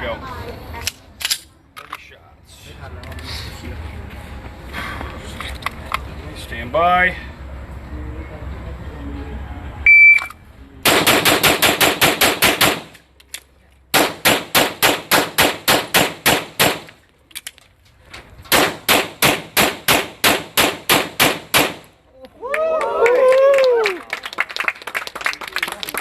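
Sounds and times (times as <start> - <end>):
shot timer beep: 9.9 - 10.3
pistol shots: 10.8 - 13.0, 13.9 - 17.0, 18.5 - 21.9.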